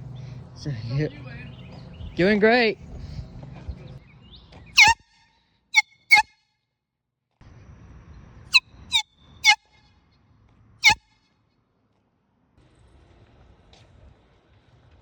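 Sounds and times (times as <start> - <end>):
air horn blasts: 4.8 - 5.1, 6.1 - 6.3, 8.9 - 9.7.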